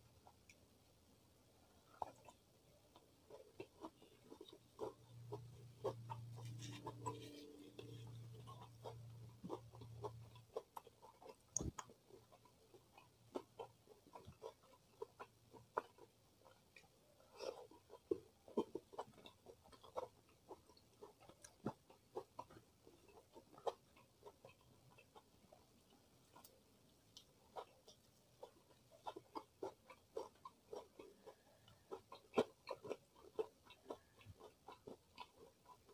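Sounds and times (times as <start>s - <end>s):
chewing and mouth sounds: 1.6s - 35.9s.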